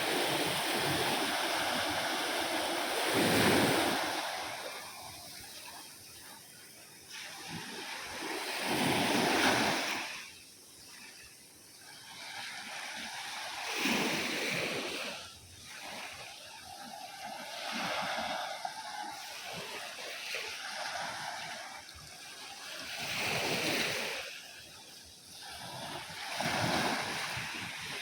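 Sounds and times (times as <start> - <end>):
sea waves breaking: 0.0 - 6.1, 7.0 - 10.3, 25.3 - 28.0.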